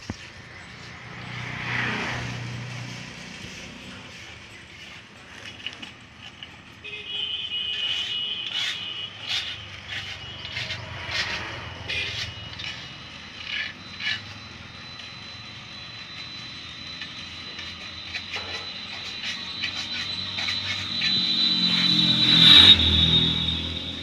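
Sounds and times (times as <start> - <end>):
tools clicking and scraping: 0.0 - 6.8, 7.7 - 15.2, 16.2 - 22.8
steady high-pitched tone: 8.1 - 24.0
low hum: 9.7 - 24.0.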